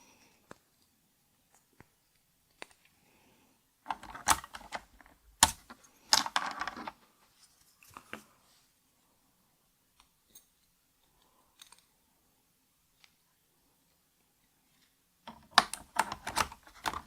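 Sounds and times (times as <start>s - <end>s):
plastic keycaps clattering: 3.9s - 6.9s, 15.3s - 17.0s.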